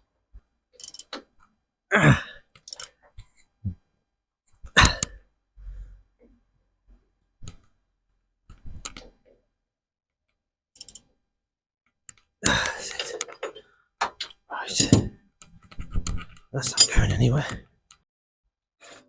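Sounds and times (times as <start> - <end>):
metallic clicks and knocks: 0.8 - 1.4, 2.6 - 2.9, 10.8 - 11.0, 12.1 - 17.2.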